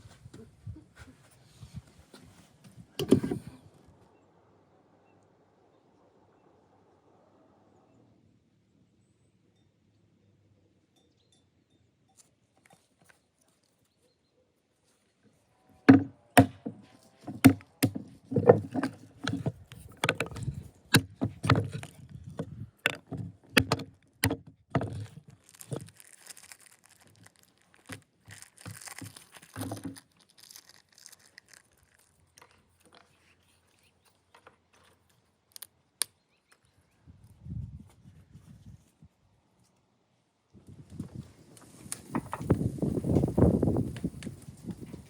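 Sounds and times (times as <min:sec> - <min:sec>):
rustling: 0:16.4 - 0:35.7.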